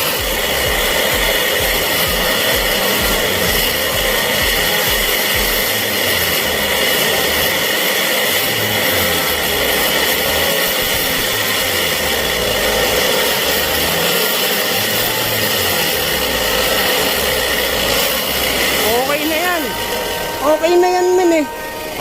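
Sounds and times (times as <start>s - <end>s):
diesel engine at raised revs: 0.0s - 22.0s
loud steady exhaust noise: 0.0s - 22.0s.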